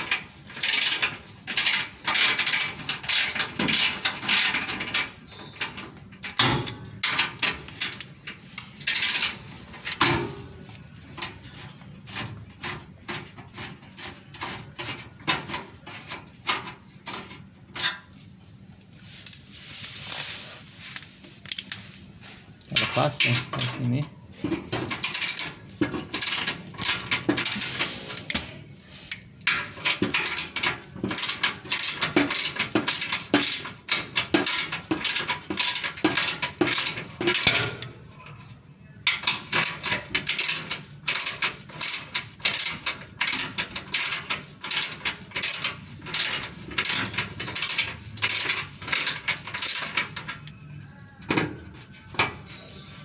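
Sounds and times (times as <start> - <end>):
ratchet wrench clicking: 39.2 - 50.6.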